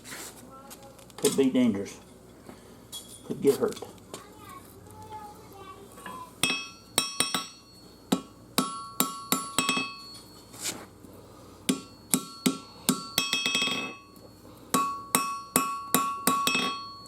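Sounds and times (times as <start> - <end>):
hammer striking hot steel on anvil: 6.4 - 10.4, 11.6 - 17.0
anvil ringing: 6.4 - 10.5, 11.7 - 17.0.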